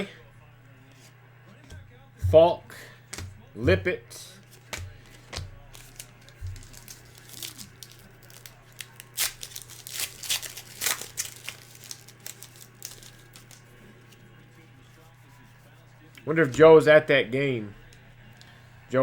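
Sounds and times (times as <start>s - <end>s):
cards sliding: 4.3s - 14.3s
wrapper crinkling and tearing: 4.5s - 13.8s.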